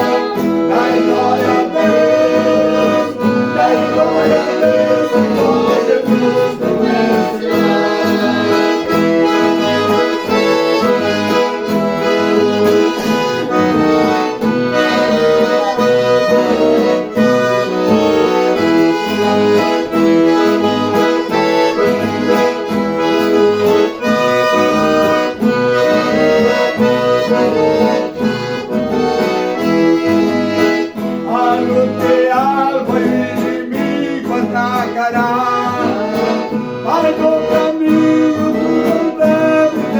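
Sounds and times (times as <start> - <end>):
accordion playing: 0.0 - 39.9.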